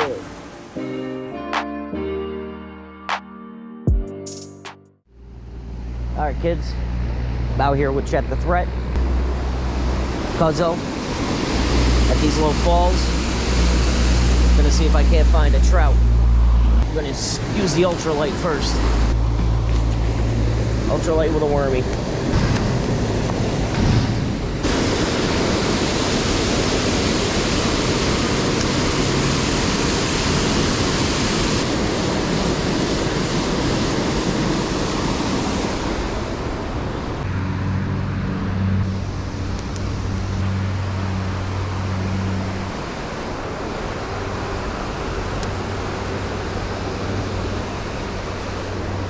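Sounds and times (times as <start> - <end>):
small waterfall rushing: 9.5 - 15.3, 24.6 - 37.2.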